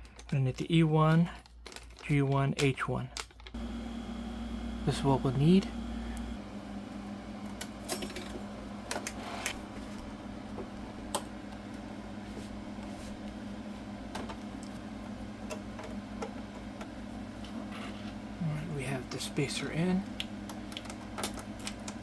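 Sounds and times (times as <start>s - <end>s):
steady low hum: 3.6s - 9.0s.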